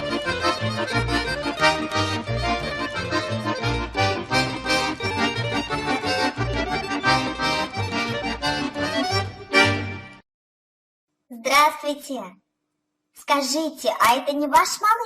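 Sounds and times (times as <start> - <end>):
bouncy accordion music: 0.0 - 10.2.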